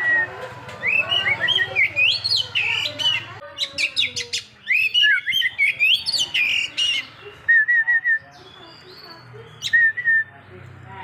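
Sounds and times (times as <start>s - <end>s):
songbird singing whistles: 0.0s - 3.2s, 3.9s - 10.3s.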